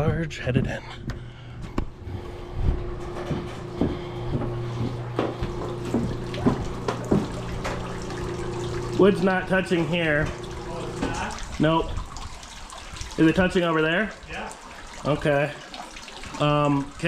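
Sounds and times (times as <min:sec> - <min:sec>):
boat lift motor humming: 0:01.1 - 0:13.2.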